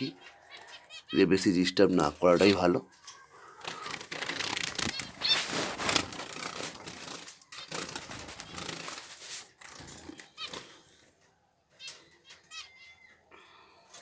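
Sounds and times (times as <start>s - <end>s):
finches fluttering and scrabbling: 2.0s - 11.1s.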